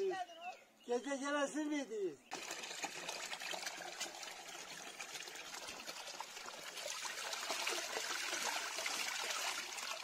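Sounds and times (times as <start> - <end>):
water trickling: 2.3 - 10.0.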